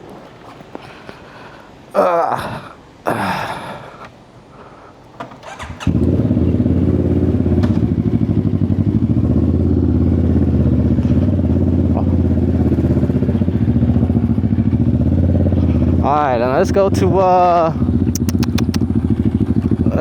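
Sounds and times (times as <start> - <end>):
motorcycle engine idling: 5.4 - 20.0
clicks: 18.2 - 18.8.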